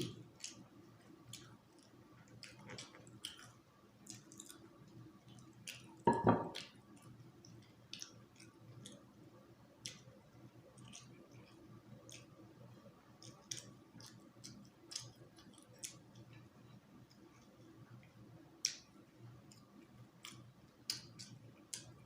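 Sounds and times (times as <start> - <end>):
wet chewing: 1.3 - 9.1, 10.7 - 16.5
lip smacks: 13.2 - 16.4.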